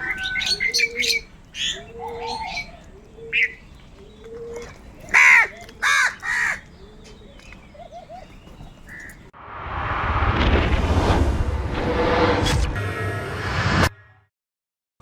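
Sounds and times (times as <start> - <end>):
faint bird calls: 0.0 - 9.3
crows cawing: 4.2 - 7.2, 8.9 - 9.2
rising whoosh: 9.4 - 14.0.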